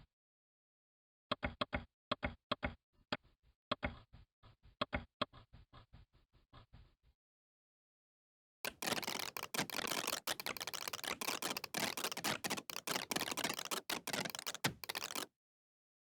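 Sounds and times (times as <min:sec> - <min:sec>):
rapid mouse clicks: 0:08.7 - 0:15.3.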